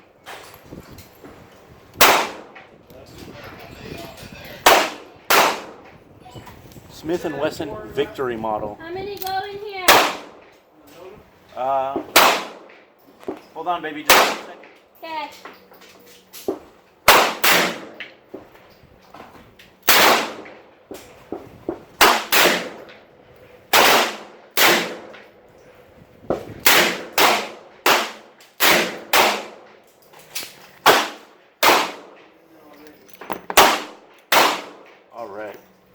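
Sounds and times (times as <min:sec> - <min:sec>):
pistol shots: 0:02.0 - 0:02.6, 0:04.6 - 0:05.8, 0:09.9 - 0:10.4, 0:12.1 - 0:12.8, 0:14.0 - 0:14.7, 0:17.0 - 0:18.1, 0:19.8 - 0:20.6, 0:22.0 - 0:22.9, 0:23.7 - 0:25.2, 0:26.6 - 0:29.8, 0:30.8 - 0:32.2, 0:33.5 - 0:35.0.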